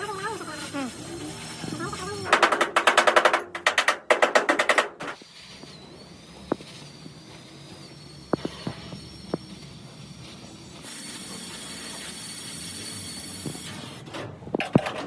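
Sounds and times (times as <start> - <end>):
rapid mechanical clicking of tool: 2.2 - 5.2.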